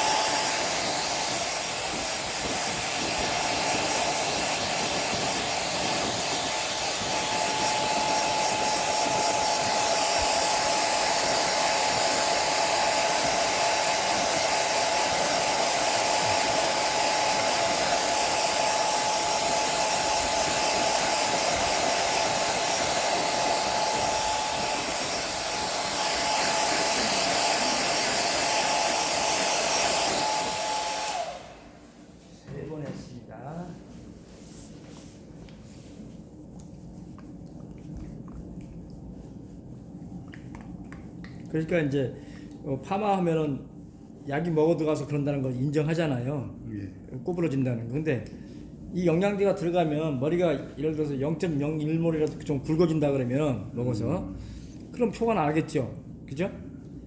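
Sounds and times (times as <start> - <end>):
hair dryer running: 0.0 - 32.3.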